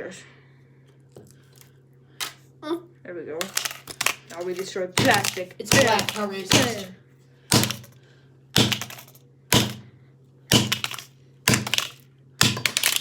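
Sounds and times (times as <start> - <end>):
hammer striking plastic casing: 3.4 - 6.9, 7.5 - 8.0, 8.6 - 9.9, 10.5 - 13.0.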